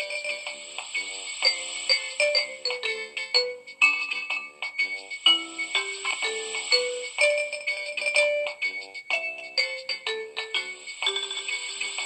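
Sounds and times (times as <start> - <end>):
synthesized phone ringtone melody: 0.0 - 12.0.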